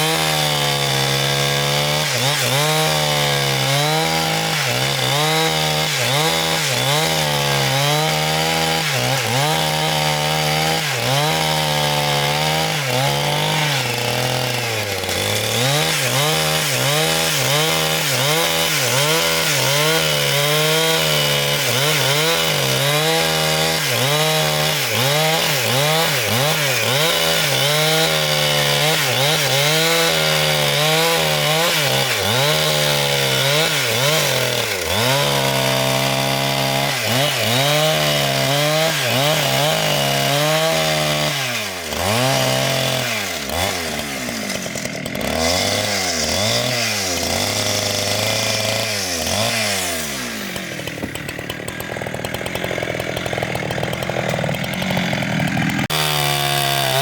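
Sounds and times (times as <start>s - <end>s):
power saw cutting log: 0.0s - 57.0s.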